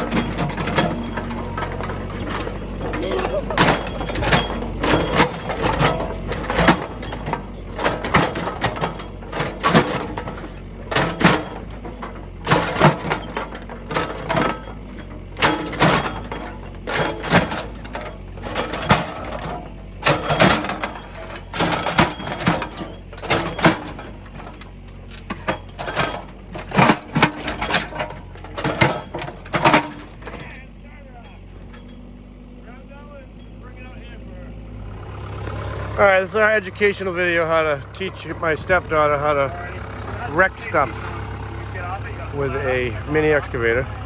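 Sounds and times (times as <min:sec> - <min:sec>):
lawn mower crashing and crunching: 0:00.0 - 0:30.6, 0:35.0 - 0:44.0
excavator engine running: 0:00.0 - 0:44.0.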